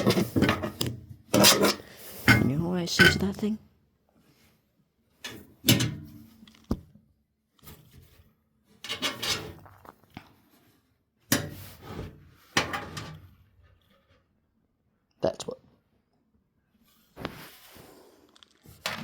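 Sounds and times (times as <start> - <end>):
tool scraping and knocking: 0.0 - 3.4.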